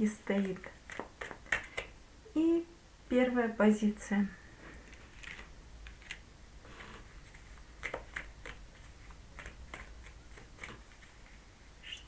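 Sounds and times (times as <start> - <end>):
cards tapping and flicking: 0.4 - 2.0, 6.8 - 11.3.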